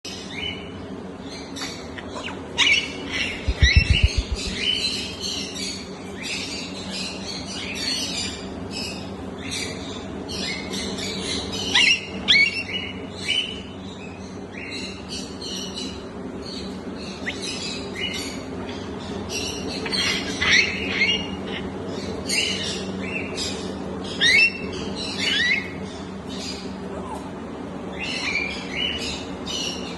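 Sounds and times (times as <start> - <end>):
steady low hum: 0.1 - 29.9
parrot chirping and whistling: 3.4 - 4.8
low thuds: 3.5 - 4.6.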